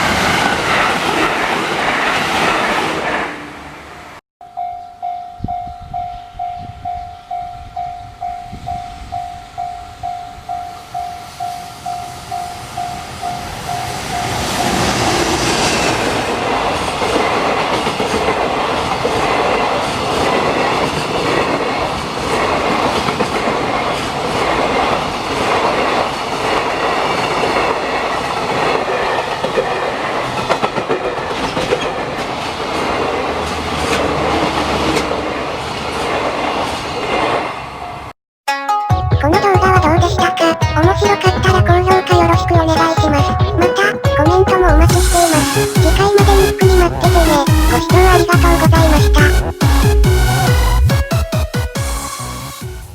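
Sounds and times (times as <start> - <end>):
train passing at speed: 0.0 - 4.2, 5.5 - 38.1
level-crossing warning bell: 4.4 - 14.9.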